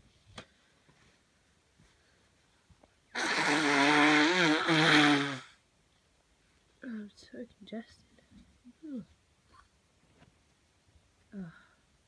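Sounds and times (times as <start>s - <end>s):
person blowing nose: 3.1s - 5.6s.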